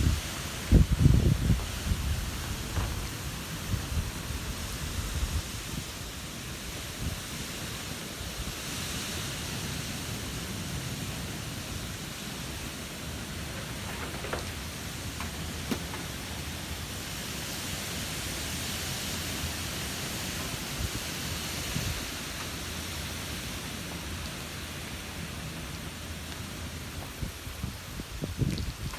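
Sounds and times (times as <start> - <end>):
wind blowing: 0.0 - 8.6, 26.0 - 28.9.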